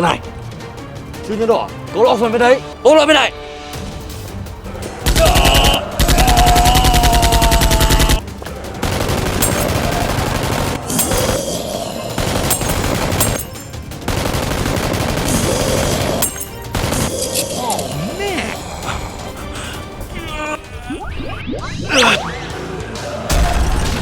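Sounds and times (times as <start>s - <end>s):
rapid automatic gunfire: 8.8s - 11.5s, 14.0s - 16.2s.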